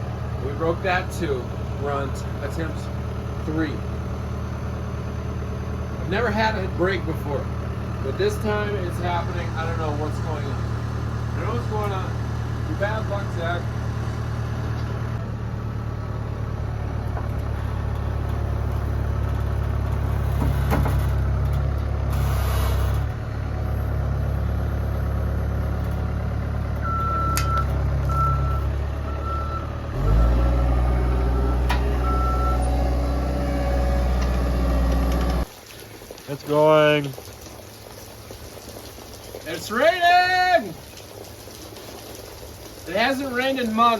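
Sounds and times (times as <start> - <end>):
diesel engine running and revving: 0.0 - 35.5
short beeps: 26.8 - 28.6, 31.3 - 32.8.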